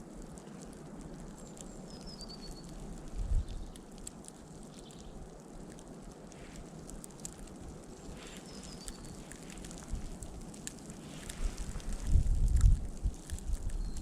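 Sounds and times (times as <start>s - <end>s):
small ticks: 0.0s - 14.0s
wind buffeting microphone: 2.7s - 3.8s, 6.3s - 14.0s
bird chirping: 8.2s - 9.2s
storm wind rushing: 11.1s - 13.7s.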